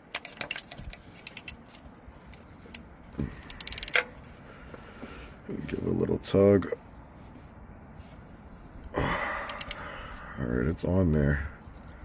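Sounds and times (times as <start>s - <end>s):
ratchet clicking: 0.1s - 2.8s, 3.4s - 4.1s, 9.5s - 9.8s.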